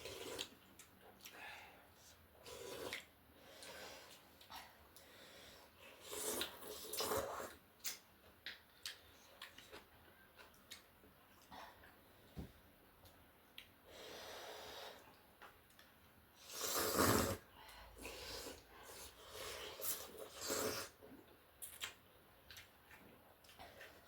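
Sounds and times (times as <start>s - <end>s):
slurping noodle soup: 0.0s - 0.6s, 2.4s - 4.2s, 5.8s - 7.6s, 16.4s - 21.0s.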